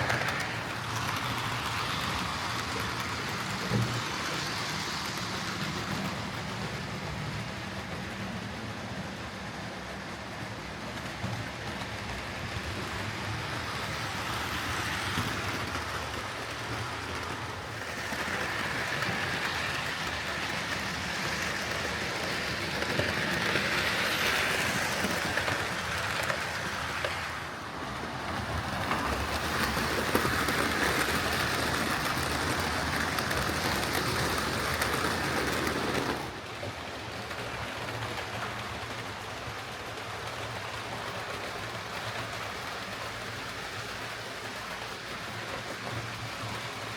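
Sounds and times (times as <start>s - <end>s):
model train motor whirr: 11.7s - 27.4s.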